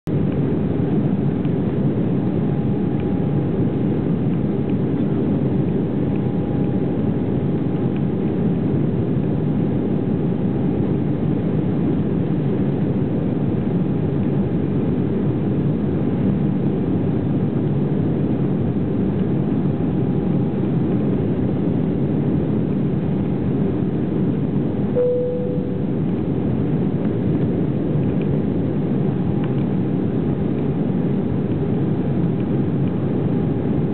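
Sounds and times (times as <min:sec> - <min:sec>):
jet engines roaring in cabin: 0:00.1 - 0:33.9
short single tone: 0:25.0 - 0:26.1.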